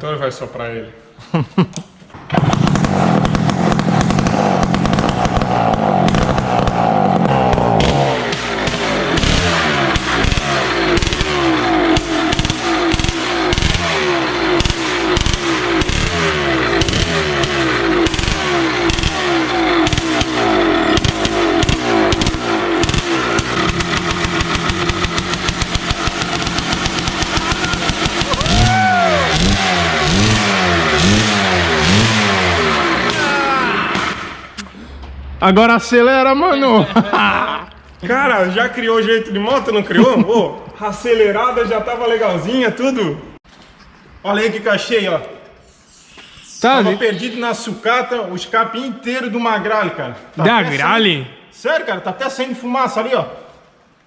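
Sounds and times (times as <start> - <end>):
two-stroke motorcycle engine revving: 2.3 - 34.6.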